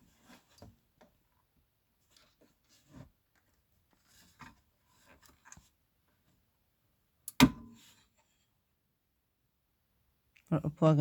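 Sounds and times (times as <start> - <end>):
sharp ringing knock: 7.4 - 7.7.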